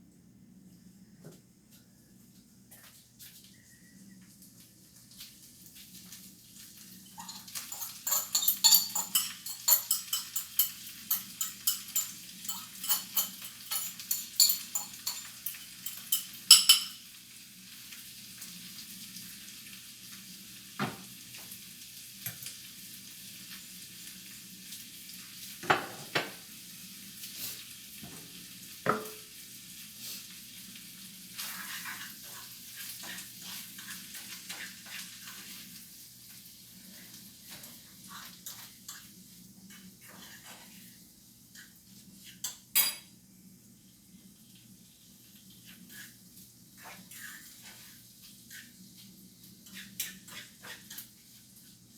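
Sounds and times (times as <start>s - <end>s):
utensil scraping against dish: 7.2s - 17.0s.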